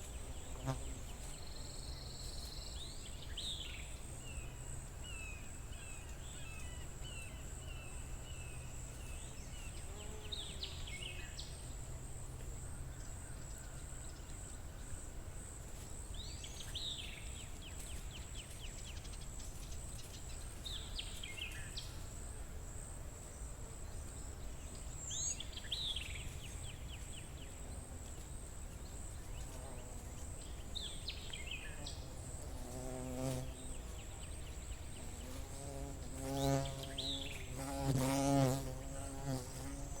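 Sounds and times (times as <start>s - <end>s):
insect buzzing close by: 0.0s - 1.7s, 9.0s - 11.4s, 27.4s - 40.0s
songbird singing: 0.0s - 22.5s, 23.3s - 40.0s.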